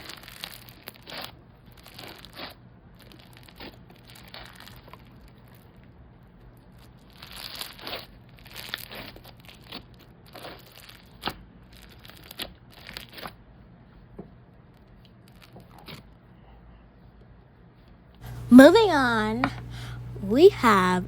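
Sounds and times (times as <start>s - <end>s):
crunchy slime crackling: 7.0s - 13.2s.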